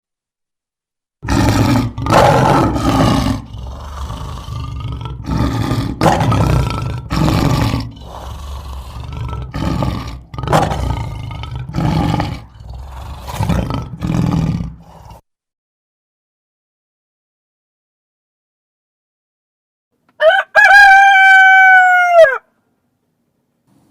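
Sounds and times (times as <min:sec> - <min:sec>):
big cat roaring: 0:01.2 - 0:15.2.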